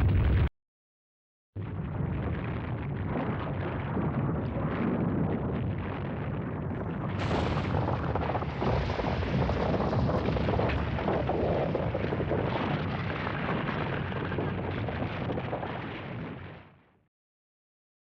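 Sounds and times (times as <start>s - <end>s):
deep rumbling roar with crackling: 1.6s - 16.9s.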